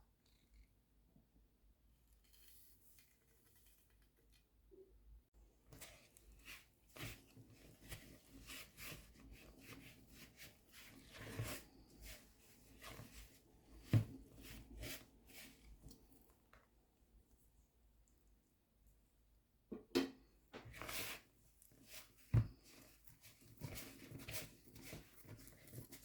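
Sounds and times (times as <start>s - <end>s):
hands squelching bread dough: 5.8s - 16.8s, 20.7s - 26.0s.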